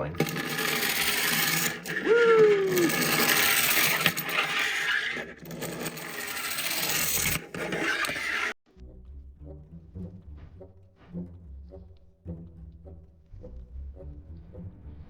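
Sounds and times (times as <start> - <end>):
clockwork toy rattling whir: 0.0 - 8.6.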